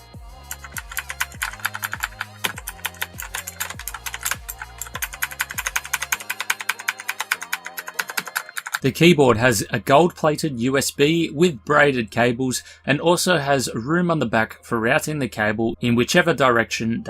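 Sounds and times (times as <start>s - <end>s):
mechanical keyboard typing: 0.5s - 8.8s.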